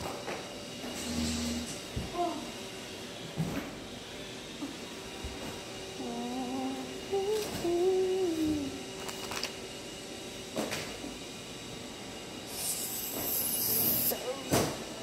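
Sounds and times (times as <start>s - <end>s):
girl humming: 6.0s - 8.9s
steady hiss: 12.5s - 14.2s.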